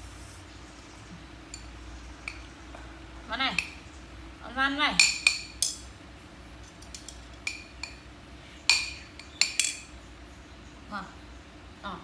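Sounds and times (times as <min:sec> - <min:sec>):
dishware clinking: 0:05.0 - 0:05.9, 0:08.7 - 0:09.9.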